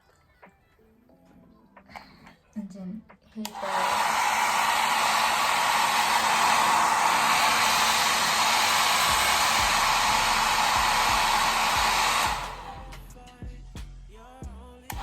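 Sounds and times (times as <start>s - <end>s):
hair dryer blowing: 3.4s - 13.1s.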